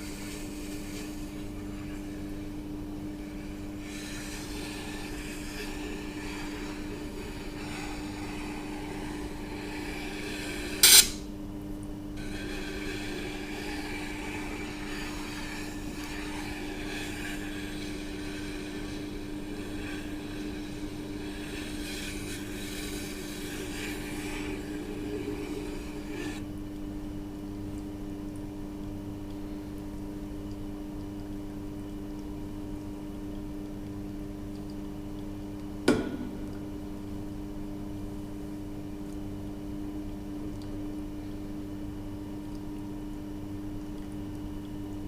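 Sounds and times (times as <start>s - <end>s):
wet grinder humming: 0.0s - 11.0s, 12.2s - 26.4s
knife scraping on grindstone: 3.2s - 11.2s, 12.2s - 26.4s.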